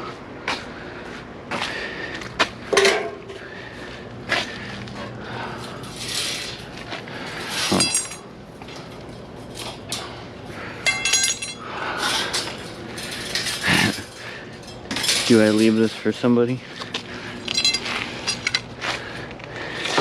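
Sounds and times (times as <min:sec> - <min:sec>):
scrap metal clinking and rattling: 0:05.6 - 0:10.2, 0:10.8 - 0:16.1, 0:17.4 - 0:18.8.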